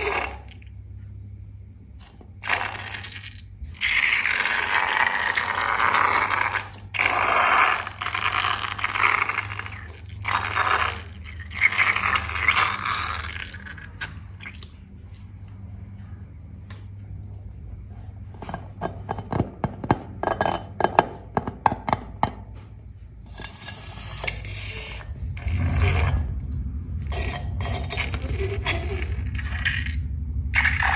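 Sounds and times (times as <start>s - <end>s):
slime squelching: 2.0s - 15.4s.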